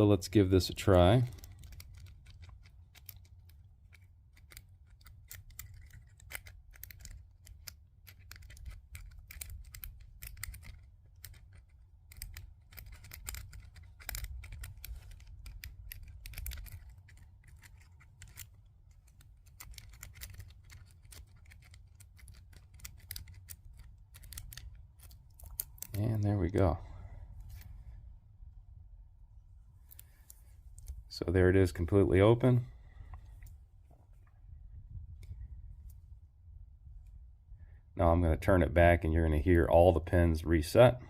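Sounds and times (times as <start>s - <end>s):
lock pick clicking and scraping: 0.7s - 26.1s, 29.8s - 31.0s.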